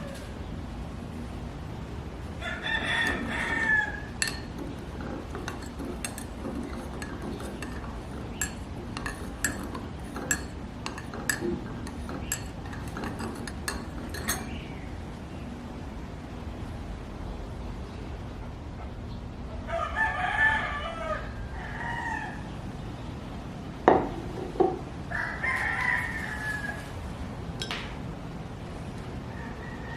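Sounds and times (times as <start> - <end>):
rooster crowing: 2.4 - 4.5, 19.6 - 22.5, 25.1 - 27.0, 29.3 - 29.9
sharp light clicks and clinks: 4.2 - 14.6.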